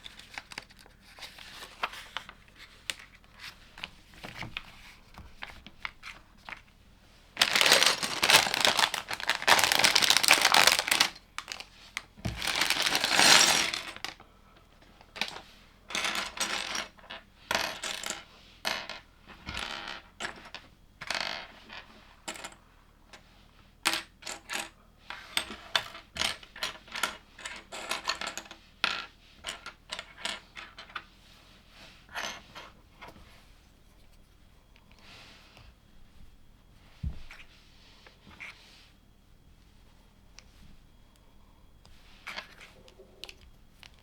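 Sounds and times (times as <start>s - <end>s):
plastic toy bricks clattering: 7.4s - 11.7s, 12.3s - 14.1s.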